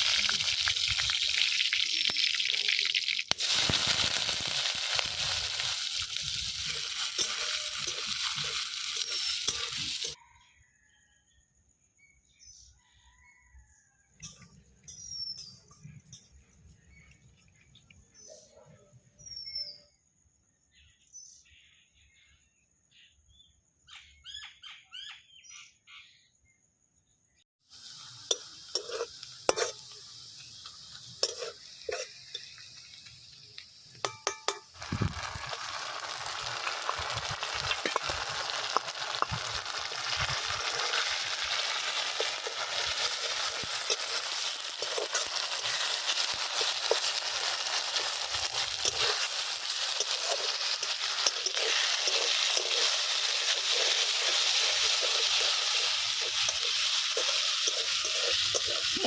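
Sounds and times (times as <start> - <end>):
food sizzling in hot oil: 0.0 - 10.2, 27.6 - 59.0
spoon tapping pan: 28.3 - 30.0, 33.9 - 34.8, 48.8 - 59.0.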